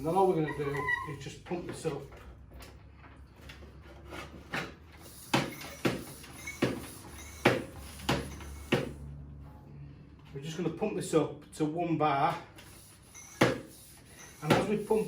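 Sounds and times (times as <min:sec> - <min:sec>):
manual air pump strokes: 0:00.0 - 0:01.2, 0:04.1 - 0:09.0, 0:12.5 - 0:15.0.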